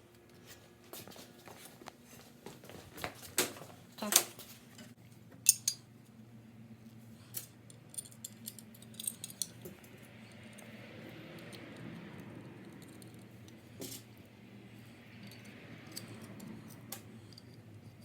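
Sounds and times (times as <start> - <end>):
small metal parts clinking: 5.4 - 5.8, 7.4 - 9.7, 15.1 - 18.0.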